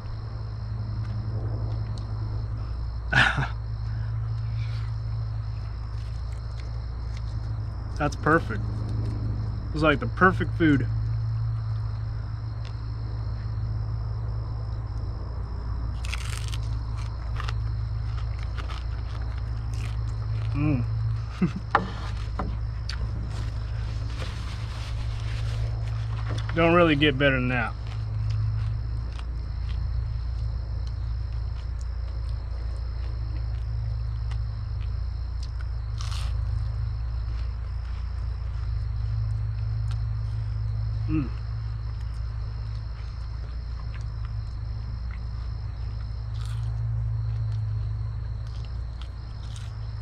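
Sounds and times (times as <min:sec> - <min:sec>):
high insect drone: 0:00.0 - 0:50.0
low hum: 0:00.0 - 0:50.0
crunching crispy food: 0:15.9 - 0:39.0, 0:41.1 - 0:47.6, 0:48.4 - 0:50.0.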